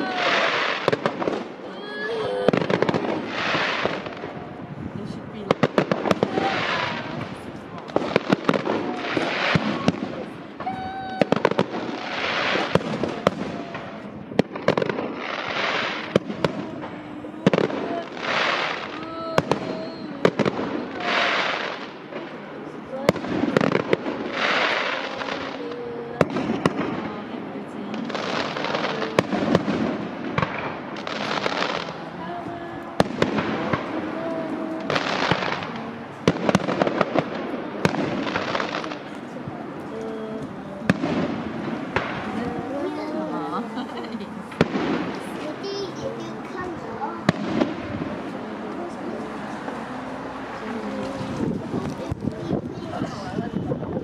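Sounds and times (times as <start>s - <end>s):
fireworks bangs and cracks: 0.0s - 54.0s
fireworks hissing crackle: 0.0s - 54.0s
firework whistle: 8.1s - 14.0s.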